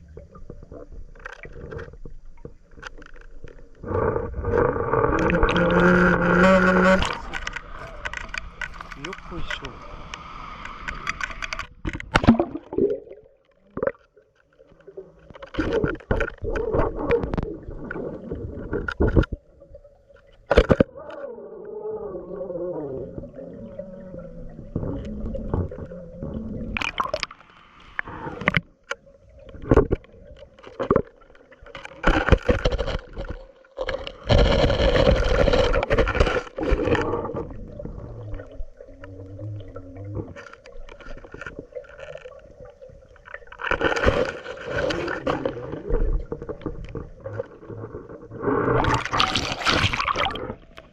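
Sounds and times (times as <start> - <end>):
rushes of water: 0.0 - 50.9
water gurgling and sloshing: 0.0 - 50.9
knocks and scrapes: 1.2 - 12.3, 31.7 - 37.6, 43.6 - 50.7.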